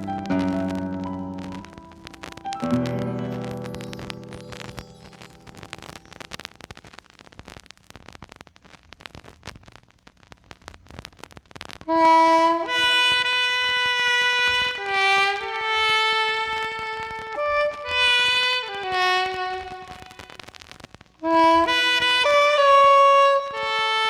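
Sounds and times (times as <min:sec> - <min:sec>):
wind instrument melody: 0:00.0 - 0:06.4, 0:11.9 - 0:20.4, 0:21.2 - 0:24.0
vinyl record crackle: 0:00.0 - 0:24.0.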